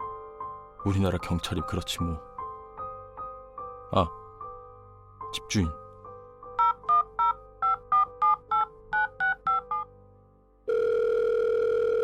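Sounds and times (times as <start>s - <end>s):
phone keypad tones: 6.6s - 9.9s
phone ringback tone: 6.6s - 9.9s, 10.7s - 12.0s.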